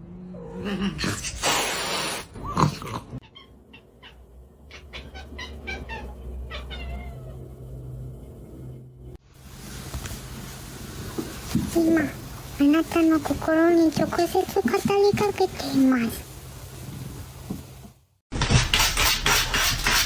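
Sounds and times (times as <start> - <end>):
cat meowing: 3.2 - 7.4.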